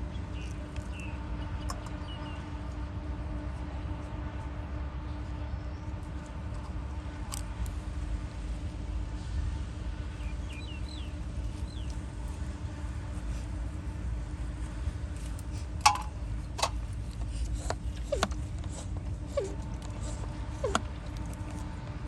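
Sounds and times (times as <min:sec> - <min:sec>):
low rumble and hum: 0:00.0 - 0:22.0
sharp clicks and knocks: 0:15.8 - 0:18.7.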